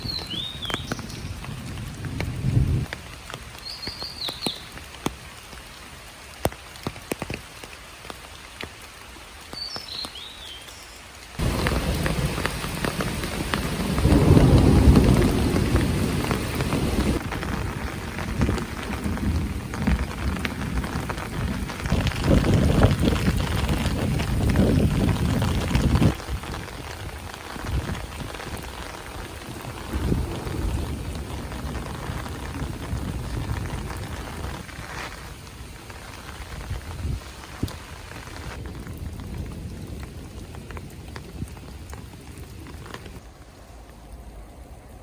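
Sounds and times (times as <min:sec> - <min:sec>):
water drips: 0:00.0 - 0:17.6
rain falling in forest: 0:00.0 - 0:45.0
low rumble of thunder: 0:00.1 - 0:03.0, 0:11.4 - 0:28.6, 0:29.3 - 0:34.9, 0:38.6 - 0:45.0.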